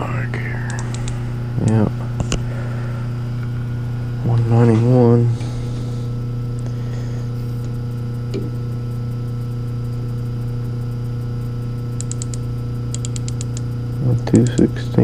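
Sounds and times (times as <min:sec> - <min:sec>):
electrical hum: 0:00.0 - 0:15.0
rapid high ticks: 0:00.6 - 0:01.8, 0:08.7 - 0:14.8.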